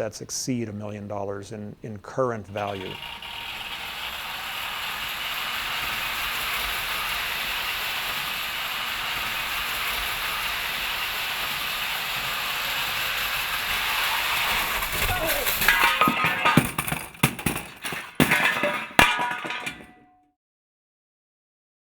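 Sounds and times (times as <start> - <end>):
toy trains whirring on track: 2.4 - 18.7.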